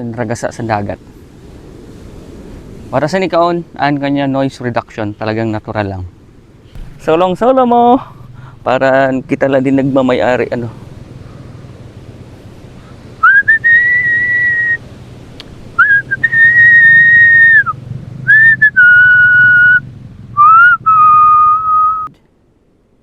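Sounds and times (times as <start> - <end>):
person whistling a tune: 13.2 - 14.8, 15.8 - 17.7, 18.3 - 19.8, 20.4 - 22.1.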